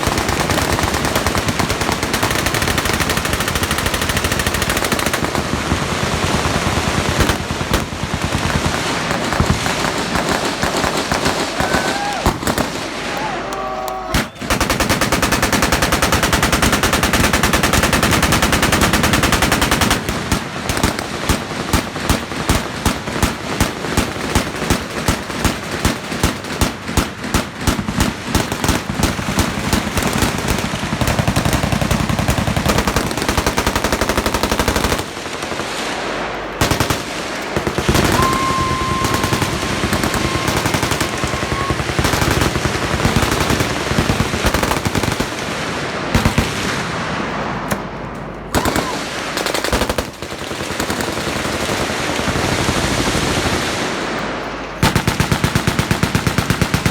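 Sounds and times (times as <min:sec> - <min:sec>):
loud separate gunshots: 0:00.0 - 0:54.2
machine guns firing: 0:00.0 - 0:56.9.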